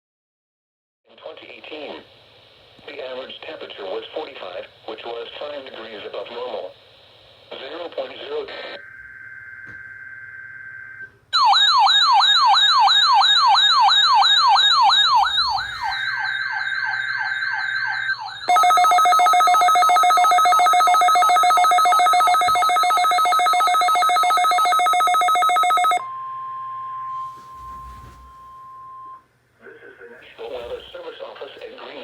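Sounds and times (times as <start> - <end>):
warbling siren sweep: 8.8 - 18.5
steady warning alarm tone: 8.8 - 29.3
rapidly pulsing buzzer: 15.0 - 16.3.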